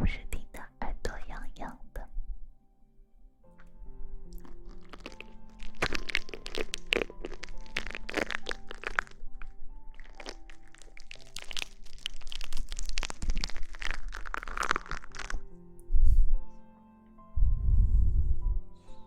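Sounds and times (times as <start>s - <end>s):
background music with held notes: 0.0s - 19.0s
crisp rustling crackles: 4.3s - 15.4s.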